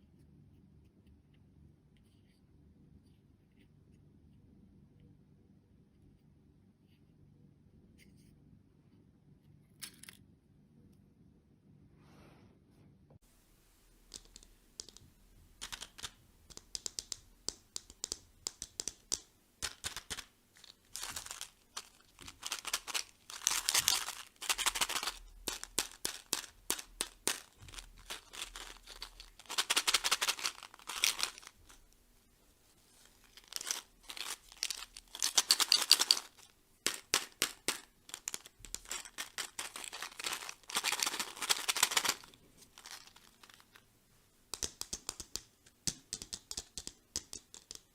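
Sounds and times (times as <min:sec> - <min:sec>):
plastic wrappers crinkling: 0:18.7 - 0:32.0, 0:32.9 - 0:43.8.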